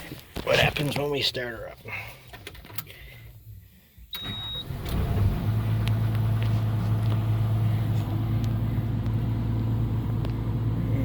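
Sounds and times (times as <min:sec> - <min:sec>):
diesel engine starting and idling: 0:02.8 - 0:11.0.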